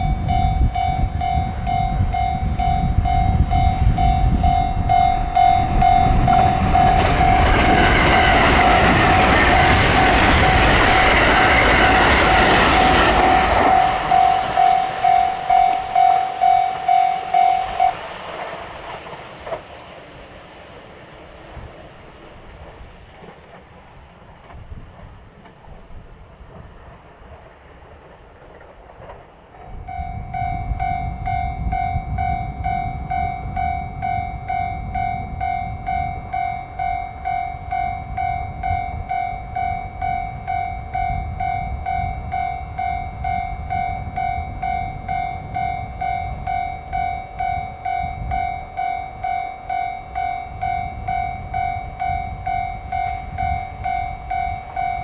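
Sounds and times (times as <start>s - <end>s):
level crossing bell clanging: 0.0s - 18.2s, 29.8s - 55.0s
low rumble of approaching train: 0.0s - 55.0s
train running over rails: 0.0s - 55.0s.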